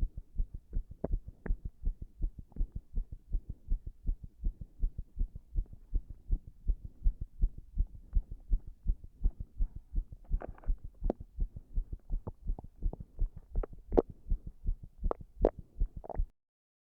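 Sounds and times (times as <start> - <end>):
heartbeat thumps: 0.0 - 16.3.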